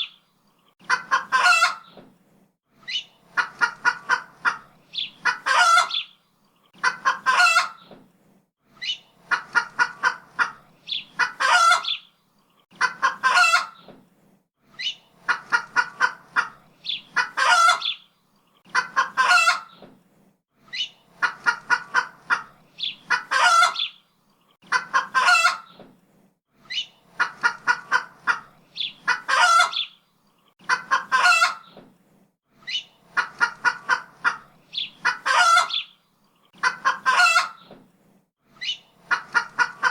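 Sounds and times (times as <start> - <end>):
chicken clucking: 0.8 - 2.0, 2.9 - 6.1, 6.7 - 8.0, 8.8 - 12.0, 12.7 - 13.9, 14.8 - 18.0, 18.6 - 19.8, 20.7 - 24.0, 24.6 - 25.9, 26.7 - 30.0, 30.6 - 31.8, 32.7 - 35.9, 36.5 - 37.8, 38.6 - 39.9.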